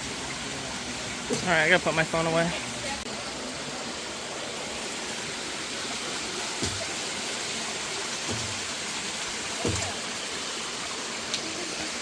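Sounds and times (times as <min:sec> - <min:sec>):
running water rushing: 0:00.0 - 0:12.0
dull thump: 0:06.6 - 0:06.9, 0:09.6 - 0:10.0.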